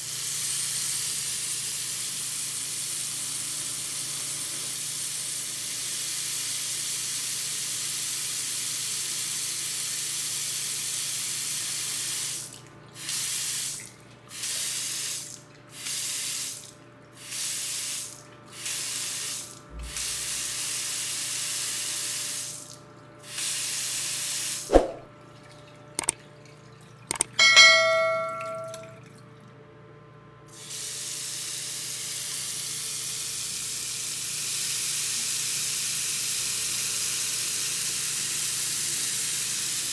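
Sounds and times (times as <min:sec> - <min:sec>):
water running from a tap: 0:00.0 - 0:24.6, 0:30.6 - 0:39.9
sharp clicks: 0:27.1 - 0:27.4
ringing ding: 0:27.4 - 0:29.0.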